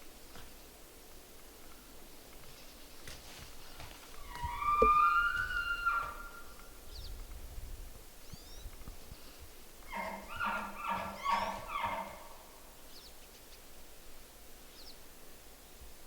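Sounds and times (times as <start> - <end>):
elk bugling: 4.2 - 6.5.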